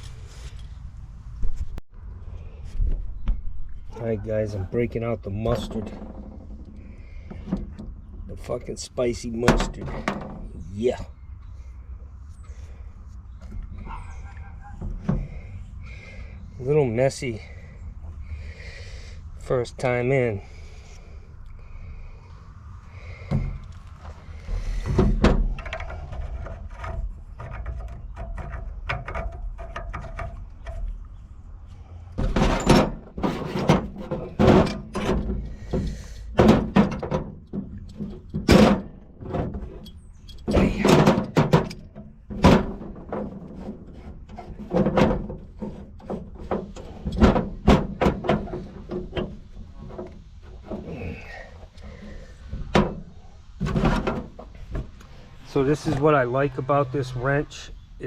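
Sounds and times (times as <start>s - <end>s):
wrench knocks clanks and scrapes: 5.3s - 10.6s, 23.0s - 31.0s, 32.2s - 56.0s.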